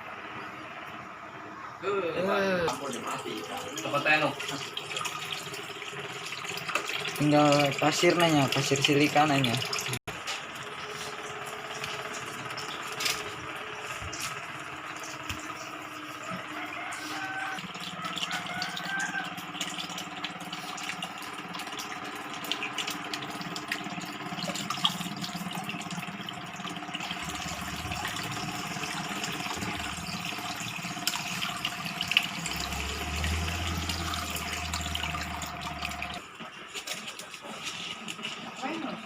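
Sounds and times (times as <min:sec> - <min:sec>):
faint water pump hum: 0:00.0 - 0:39.0
water running and splashing: 0:02.6 - 0:39.0.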